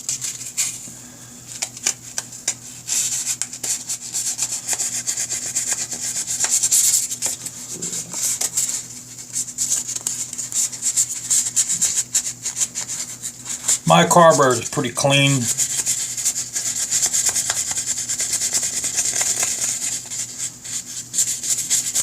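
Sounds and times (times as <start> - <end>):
sandpaper rubbing on metal: 15.4 - 22.0.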